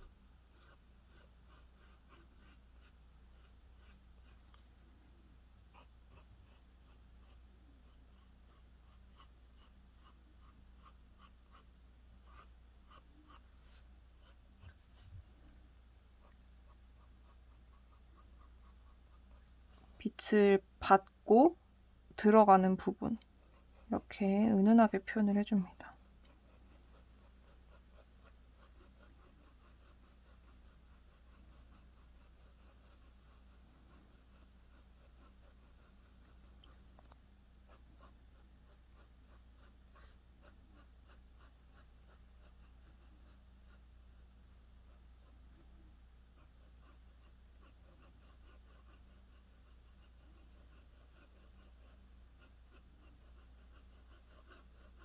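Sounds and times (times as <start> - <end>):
pencil scratching on paper: 0.0 - 4.6, 5.7 - 15.1, 16.2 - 19.4, 23.0 - 36.8, 37.6 - 45.4, 46.4 - 55.0.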